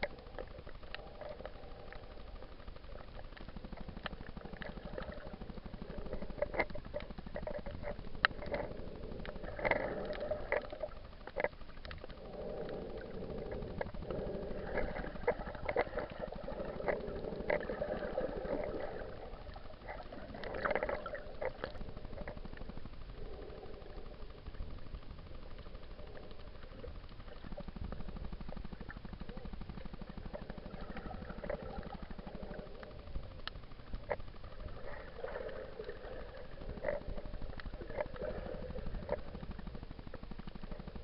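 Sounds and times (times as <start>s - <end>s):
sharp underwater clicks: 0.0s - 41.0s
underwater bubbling and gurgling: 0.0s - 41.0s.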